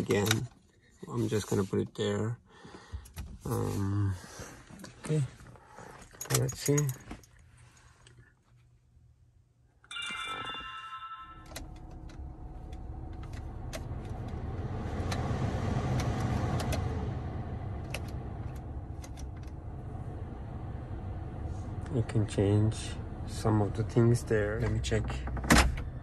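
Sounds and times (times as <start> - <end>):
dashboard tone: 9.9 - 14.6
car engine low rumble: 11.4 - 26.0.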